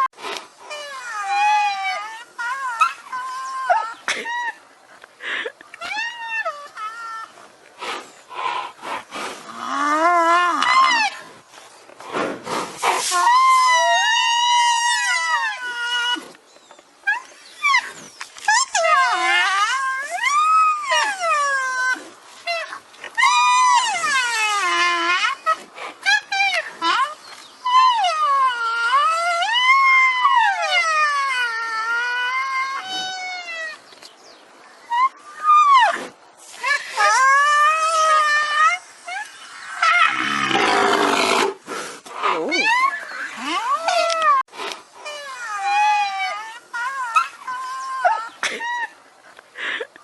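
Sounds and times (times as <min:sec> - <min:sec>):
rhinoceros squealing: 0:12.8 - 0:16.3, 0:17.1 - 0:33.8, 0:34.9 - 0:41.6, 0:42.2 - 0:44.4, 0:45.0 - 0:49.0
rhinoceros whining call: 0:34.9 - 0:41.6.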